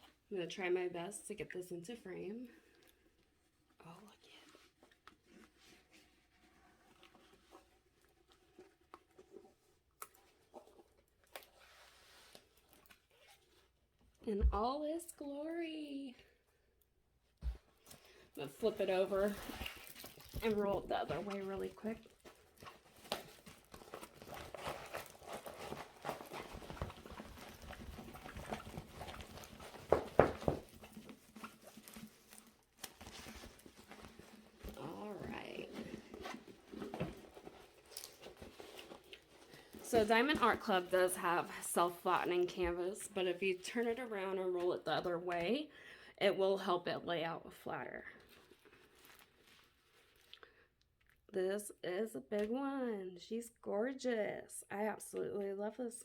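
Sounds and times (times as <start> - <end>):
canvas rustling and crackling: 18.4 - 44.4.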